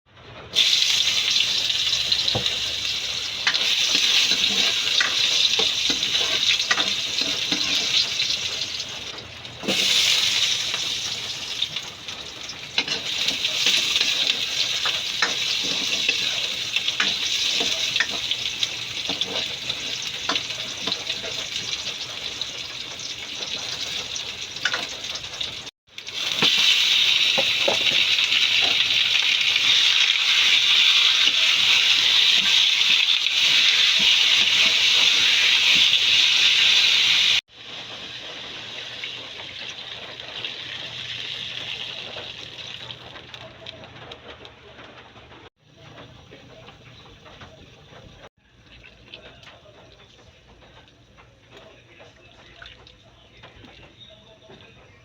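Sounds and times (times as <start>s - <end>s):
food sizzling in a pot: 0.5s - 43.4s.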